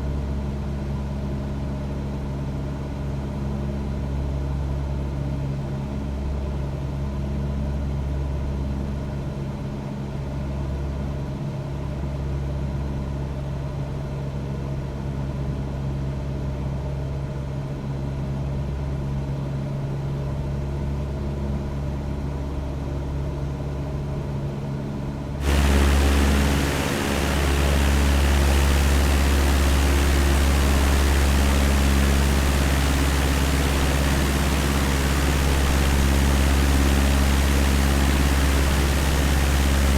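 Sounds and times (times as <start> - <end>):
loud steady hiss: 25.4 - 39.9
propeller plane engine droning: 25.4 - 39.9.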